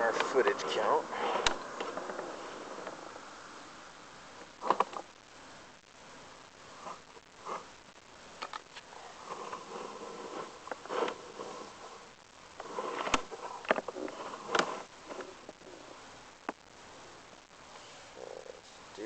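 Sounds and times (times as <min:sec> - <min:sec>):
camera knocking and scraping in pipe: 0:12.6 - 0:15.6.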